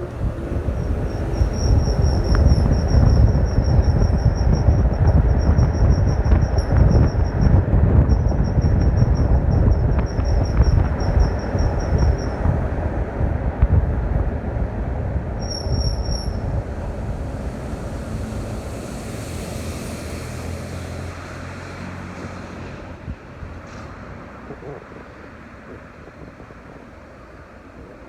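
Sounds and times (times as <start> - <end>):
pulsing high-pitched squeal: 0.0 - 12.8, 15.4 - 21.4
vehicle low rumble: 0.0 - 28.0.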